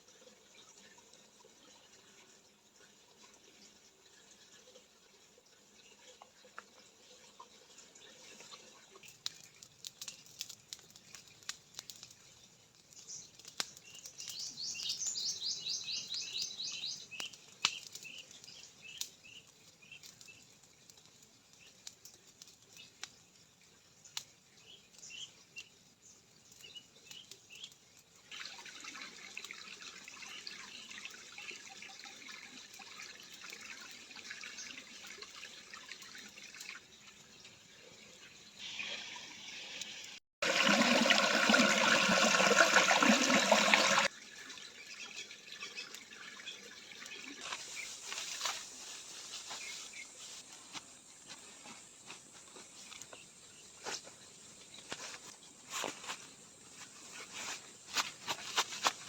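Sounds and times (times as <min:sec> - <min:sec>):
bird chirps: 0:13.9 - 0:19.4
songbird trilling: 0:14.3 - 0:17.0
running water rushing: 0:40.4 - 0:48.8.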